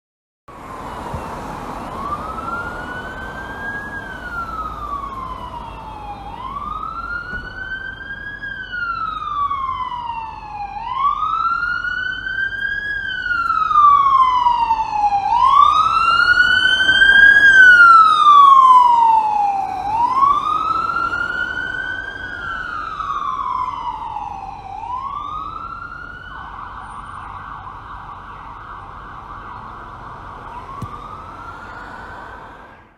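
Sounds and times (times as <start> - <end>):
ambulance siren wailing: 0.5 - 32.9.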